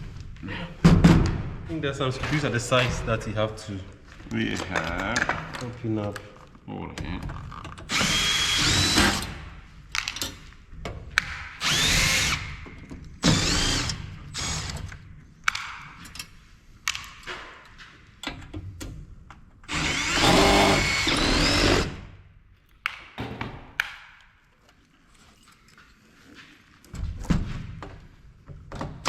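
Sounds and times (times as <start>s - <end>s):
power driver whirring: 7.9s - 9.3s, 11.6s - 12.6s, 13.2s - 15.0s, 19.7s - 22.0s.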